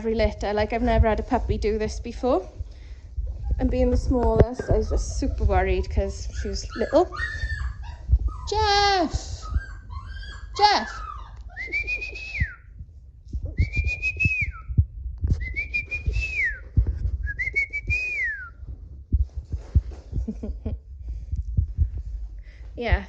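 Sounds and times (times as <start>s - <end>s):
soft thumps of movement: 0.0s - 10.0s, 12.4s - 23.0s
dog whining: 4.4s - 12.7s.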